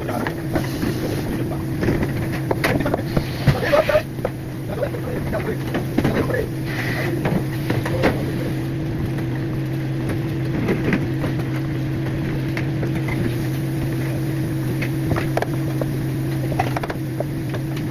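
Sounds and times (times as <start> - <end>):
low mechanical hum: 0.0 - 17.9.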